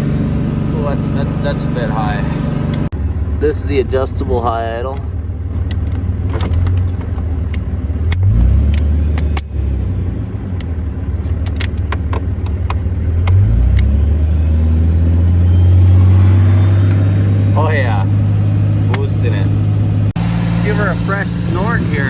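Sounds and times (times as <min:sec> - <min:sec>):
diesel engine high idle: 0:00.0 - 0:05.6, 0:16.6 - 0:22.0.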